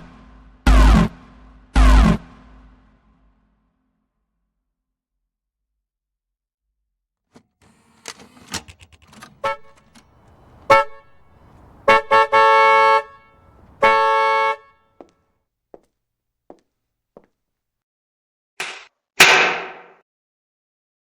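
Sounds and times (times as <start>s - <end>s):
clicks and knocks: 7.6s - 12.0s
vehicle horn honking: 9.2s - 14.8s.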